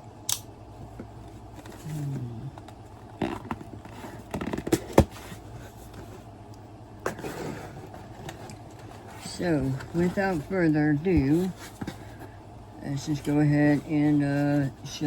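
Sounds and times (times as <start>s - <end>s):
sharp click: 0.3s - 0.5s
cardboard scraping and rustling: 3.2s - 6.3s, 7.0s - 12.4s.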